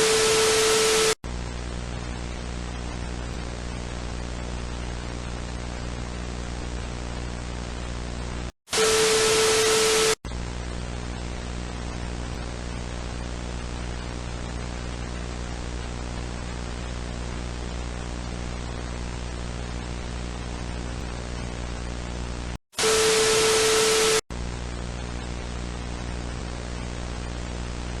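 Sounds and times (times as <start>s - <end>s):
broadcast static: 0.0s - 1.2s, 6.3s - 11.7s, 22.8s - 26.0s
electrical hum: 0.0s - 5.6s.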